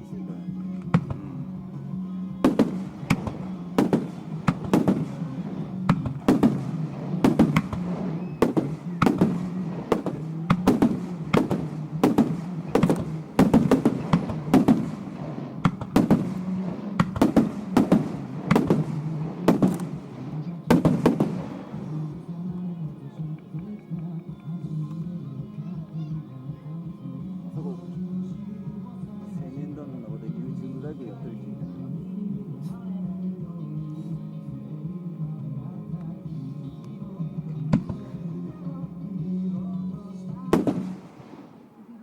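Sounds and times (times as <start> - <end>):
music: 0.0 - 42.0
fireworks bursting with bangs: 0.8 - 1.7, 2.4 - 25.2, 36.0 - 42.0.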